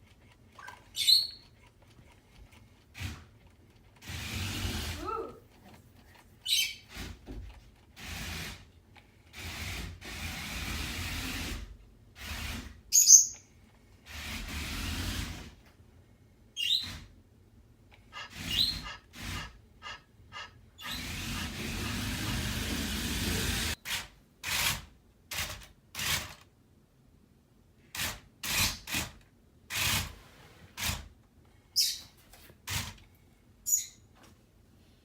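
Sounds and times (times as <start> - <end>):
robot dog breathy rustling noises: 0.0 - 10.0
robot dog electronic squeak: 0.6 - 1.5, 18.1 - 21.0.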